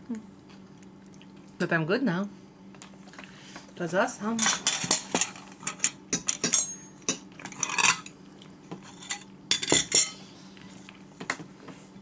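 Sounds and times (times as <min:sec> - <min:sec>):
cutlery clinking on plates: 0:04.4 - 0:08.1, 0:08.9 - 0:10.2.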